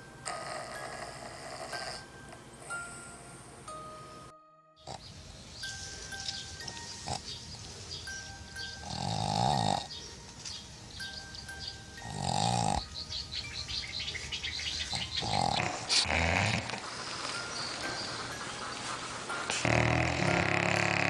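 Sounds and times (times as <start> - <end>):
faint music: 0.0 - 21.0
dog snoring: 0.2 - 3.0, 4.9 - 5.1, 6.6 - 7.5, 8.6 - 10.0, 12.0 - 12.9, 14.9 - 18.6, 19.4 - 21.0.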